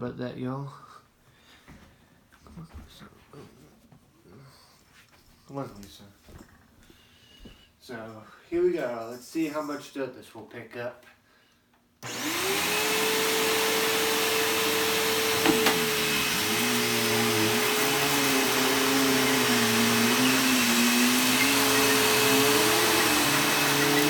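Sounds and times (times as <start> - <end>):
vacuum cleaner running on carpet: 12.0 - 24.0.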